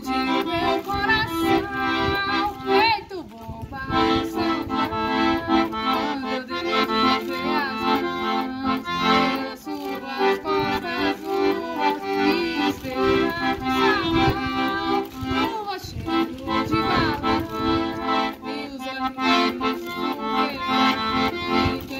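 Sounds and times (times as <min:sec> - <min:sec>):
accordion playing traditional tune: 0:00.0 - 0:21.9.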